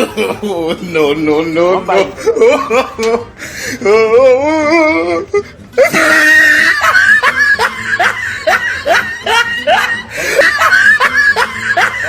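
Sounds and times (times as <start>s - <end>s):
person cackling with laughter: 0.0s - 1.0s, 3.9s - 12.0s.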